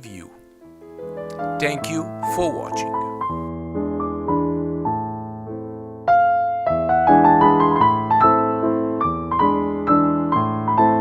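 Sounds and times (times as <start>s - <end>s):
electric piano playing chords: 0.0s - 11.0s.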